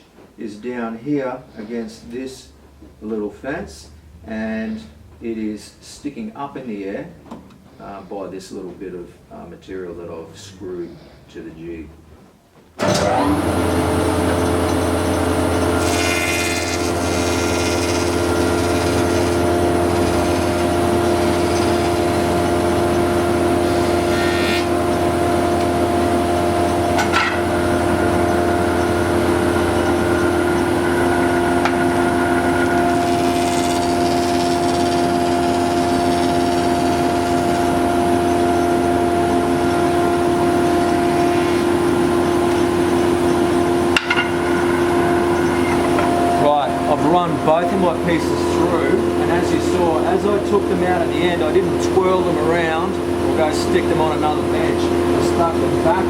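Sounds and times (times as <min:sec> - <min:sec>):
thickness planer running: 0:12.8 - 0:56.0.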